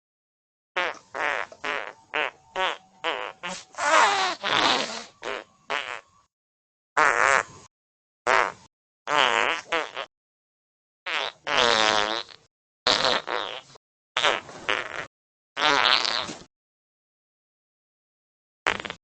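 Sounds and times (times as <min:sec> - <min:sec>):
fake fart noises: 0:00.8 - 0:06.2, 0:07.0 - 0:07.7, 0:08.3 - 0:10.1, 0:11.1 - 0:16.5, 0:18.7 - 0:19.0.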